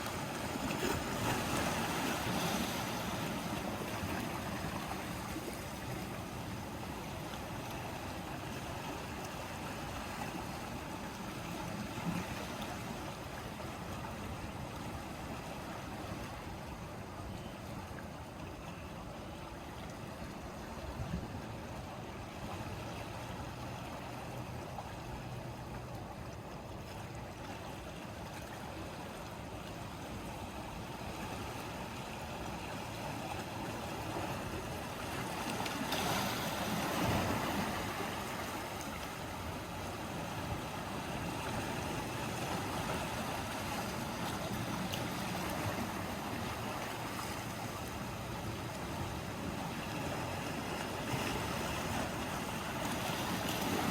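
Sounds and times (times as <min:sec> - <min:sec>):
sea waves washing on shore: 0:00.0 - 0:53.9.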